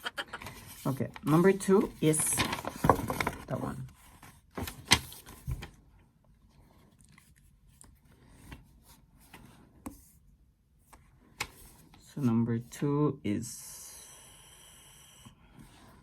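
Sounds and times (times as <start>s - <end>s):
light rustling of packaging: 0.4s - 9.8s.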